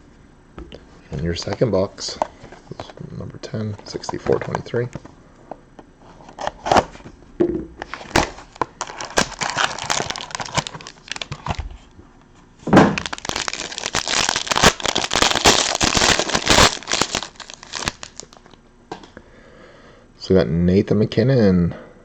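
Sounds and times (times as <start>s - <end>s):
plastic wrapping torn and crumpled: 7.8s - 11.9s, 12.9s - 18.6s.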